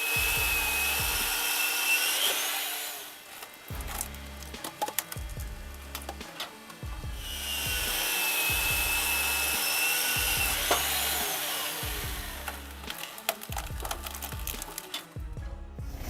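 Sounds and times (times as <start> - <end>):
background music with low beat: 0.0 - 2.2, 3.5 - 16.0
power saw cutting log: 0.0 - 15.3.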